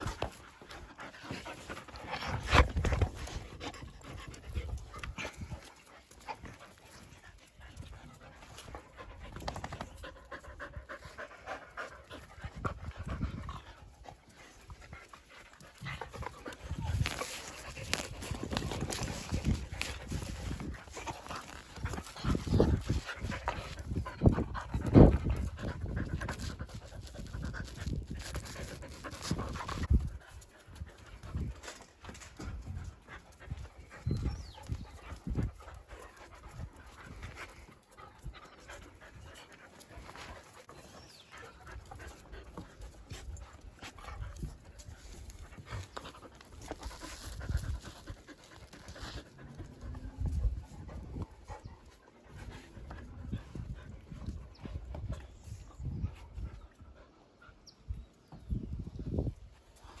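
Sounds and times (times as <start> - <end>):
dogs panting: 0.0 - 60.0.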